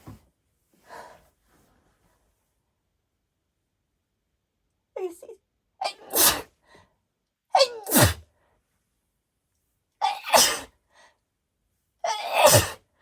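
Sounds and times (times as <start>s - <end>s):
woman sneezing: 5.8s - 6.5s, 7.6s - 8.2s, 10.0s - 10.7s, 12.1s - 12.8s.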